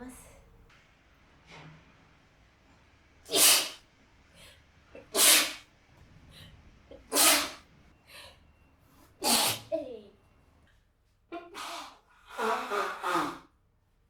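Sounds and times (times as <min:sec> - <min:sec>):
woman sneezing: 0:03.3 - 0:03.8, 0:05.0 - 0:05.6, 0:06.9 - 0:07.6, 0:09.2 - 0:09.9.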